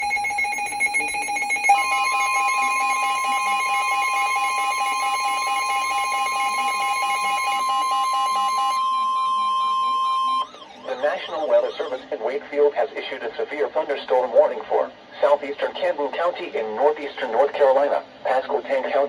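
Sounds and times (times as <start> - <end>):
electronic alarm tones: 0.0 - 11.9.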